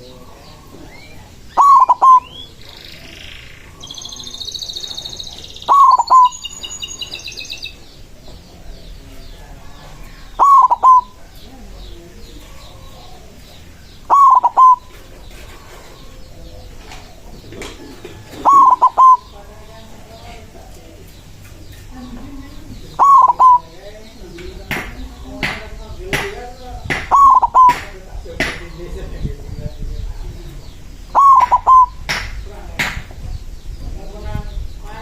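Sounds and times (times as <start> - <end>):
dove cooing: 0.0 - 7.5, 9.8 - 19.4, 21.9 - 23.9, 26.9 - 27.9, 30.4 - 32.2
small birds twittering: 0.0 - 35.0.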